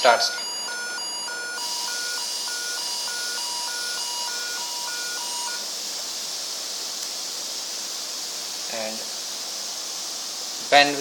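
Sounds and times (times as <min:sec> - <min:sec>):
two-note electronic beep: 0:00.0 - 0:05.6
steady hiss: 0:01.6 - 0:11.0.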